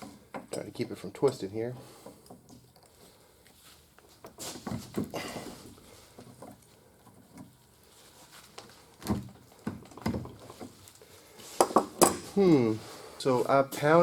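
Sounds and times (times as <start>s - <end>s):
metal tools knocking on metal: 0.0s - 1.6s.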